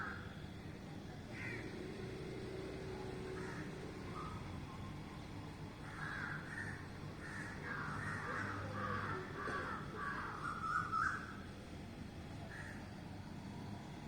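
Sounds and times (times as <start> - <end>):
crow cawing: 0.0 - 0.3, 1.3 - 1.7, 3.3 - 4.4, 5.8 - 11.4, 12.5 - 12.9.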